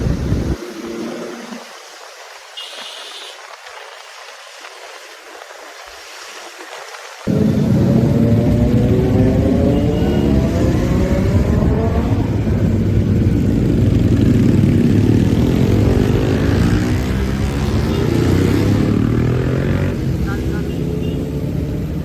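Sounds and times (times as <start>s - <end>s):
motorcycle engine revving: 7.3s - 22.0s.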